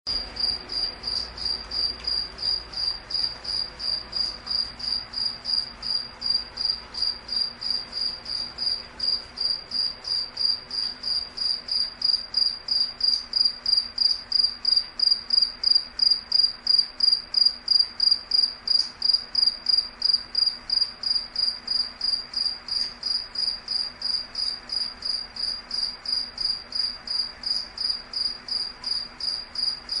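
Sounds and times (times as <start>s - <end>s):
cricket chirping: 0.1s - 30.0s.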